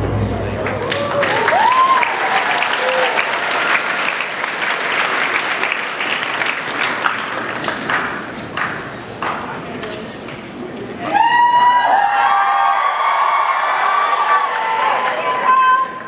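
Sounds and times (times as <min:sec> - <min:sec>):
audience applauding: 0:00.4 - 0:10.0, 0:12.2 - 0:16.0
audience whoops: 0:00.5 - 0:04.5, 0:11.0 - 0:15.9.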